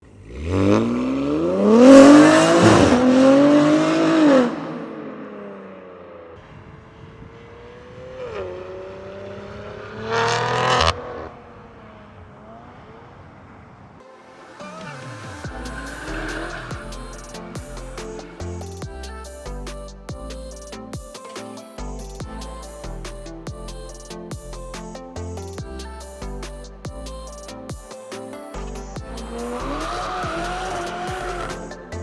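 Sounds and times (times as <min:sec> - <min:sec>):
short loud engine rev: 0:00.0 - 0:05.2, 0:14.6 - 0:17.2, 0:29.3 - 0:31.7
car engine accelerating hard: 0:00.0 - 0:13.2, 0:14.6 - 0:18.3, 0:29.2 - 0:32.0.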